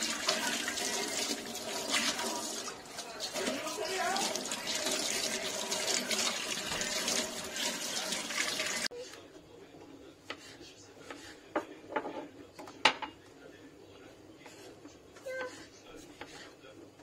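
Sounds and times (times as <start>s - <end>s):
running water splashing: 0.0s - 8.9s.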